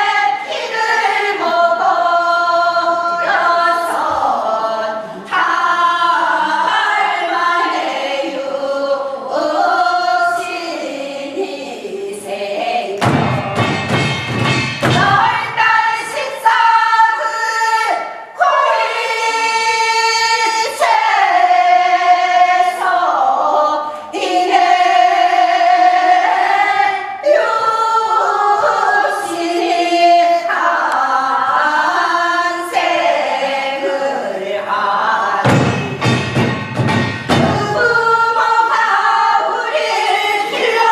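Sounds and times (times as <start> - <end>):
group singing folk song in unison: 0.0 - 40.9
low thumps: 35.4 - 38.2.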